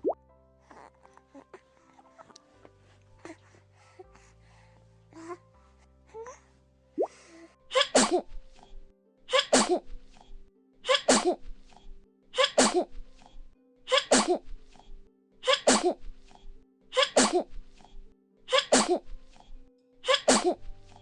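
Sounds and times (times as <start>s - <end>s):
soft background music: 0.0s - 21.0s
child sneezing: 7.7s - 8.3s, 9.3s - 9.9s, 10.9s - 11.5s, 12.4s - 13.0s, 13.9s - 14.6s, 15.4s - 16.1s, 17.0s - 17.6s, 18.5s - 19.2s, 20.1s - 20.7s.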